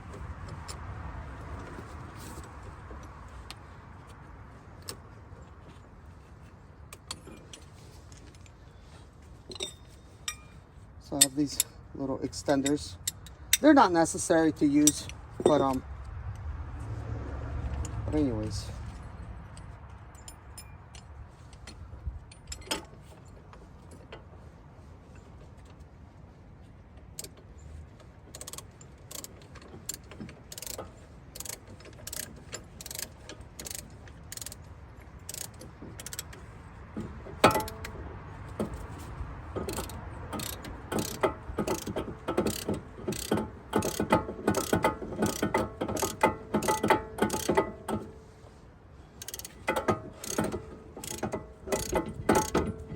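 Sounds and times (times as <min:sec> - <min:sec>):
ratchet clicking: 0:14.8 - 0:15.8, 0:28.3 - 0:36.4, 0:37.4 - 0:38.0, 0:39.6 - 0:48.1, 0:49.2 - 0:52.9.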